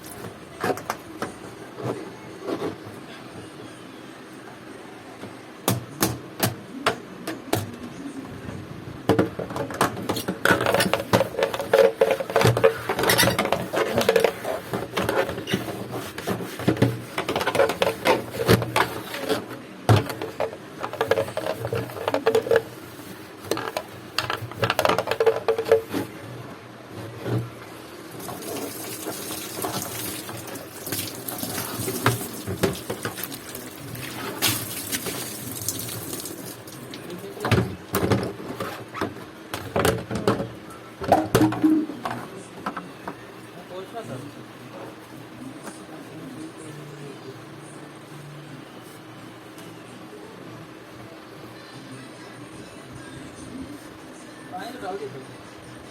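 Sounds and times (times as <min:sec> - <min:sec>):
knocks and clatters in a tub: 0:09.1 - 0:22.7, 0:23.4 - 0:26.1, 0:28.3 - 0:41.8
water running and splashing: 0:28.2 - 0:37.3.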